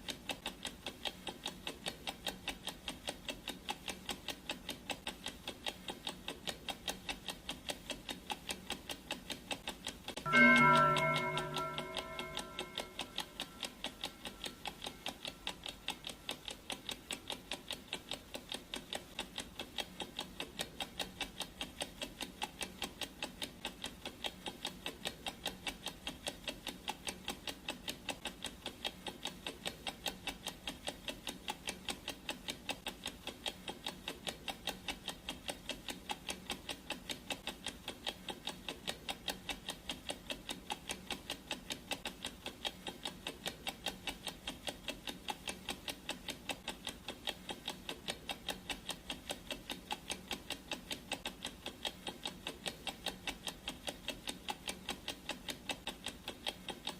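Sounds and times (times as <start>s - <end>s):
clock ticking: 0.0s - 56.9s
ringing tone: 10.3s - 14.4s.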